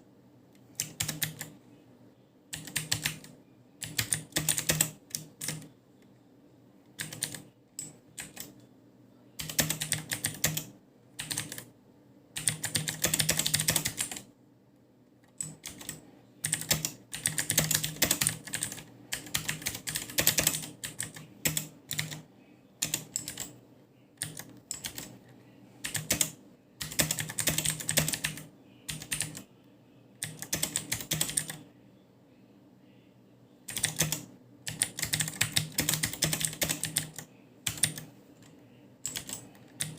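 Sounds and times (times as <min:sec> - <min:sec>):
mechanical keyboard clicks: 0:00.8 - 0:01.5, 0:02.6 - 0:05.6, 0:07.0 - 0:08.5, 0:09.4 - 0:11.7, 0:12.4 - 0:14.2, 0:15.3 - 0:22.2, 0:22.8 - 0:23.5, 0:24.2 - 0:25.1, 0:25.8 - 0:29.4, 0:30.2 - 0:31.6, 0:33.7 - 0:38.0, 0:39.1 - 0:39.9.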